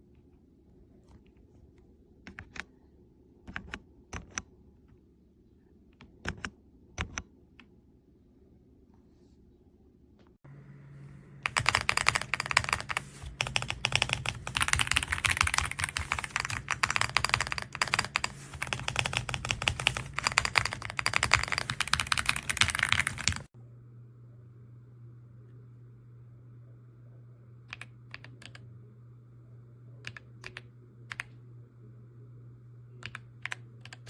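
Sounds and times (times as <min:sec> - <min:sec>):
low steady hum: 0:00.0 - 0:34.0
fast mechanical keyboard typing: 0:11.4 - 0:23.5, 0:33.0 - 0:34.0.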